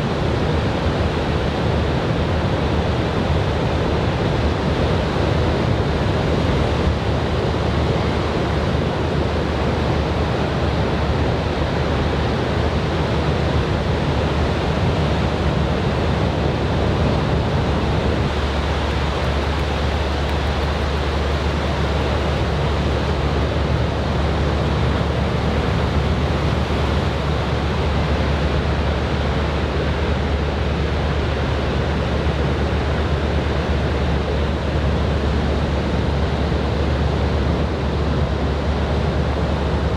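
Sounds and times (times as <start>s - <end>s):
wind on microphone: 15.7s - 30.5s
ocean surf breaking: 17.7s - 28.6s.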